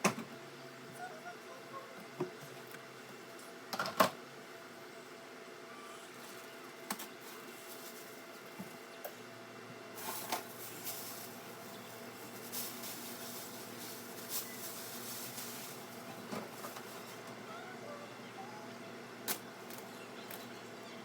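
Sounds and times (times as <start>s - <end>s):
containers and food being handled: 10.0s - 17.4s.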